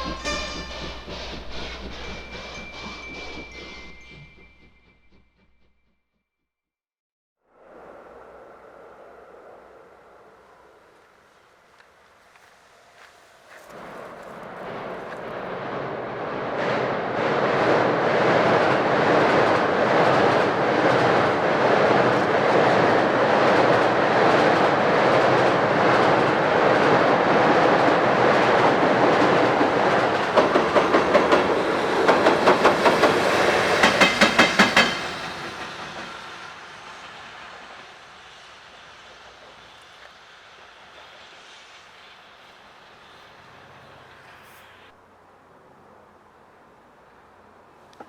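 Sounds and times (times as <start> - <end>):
wheels clacking on rail joints: 0.0 - 5.6, 11.1 - 37.7
train rumbling past: 0.0 - 6.0, 7.5 - 48.0.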